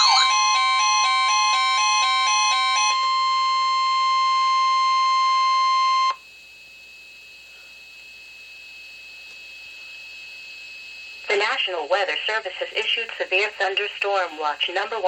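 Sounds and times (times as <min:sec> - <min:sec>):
two-note electronic alarm: 0:00.0 - 0:11.2
steady warning alarm tone: 0:00.0 - 0:12.7
faint radio hiss: 0:11.2 - 0:15.0.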